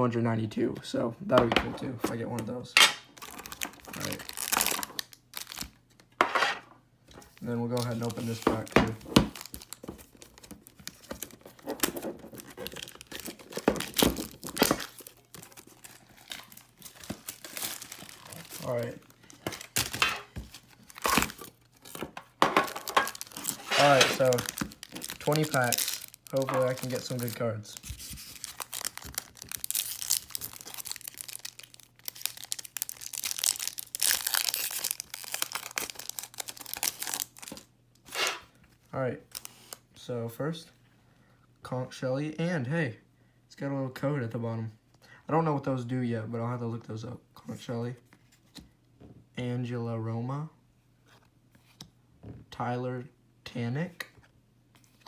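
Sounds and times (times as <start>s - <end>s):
plastic crinkling rustles: 3.1s - 5.8s, 7.2s - 37.7s
plastic wrapping tearing: 3.1s - 5.8s, 7.7s - 22.0s, 22.7s - 38.4s.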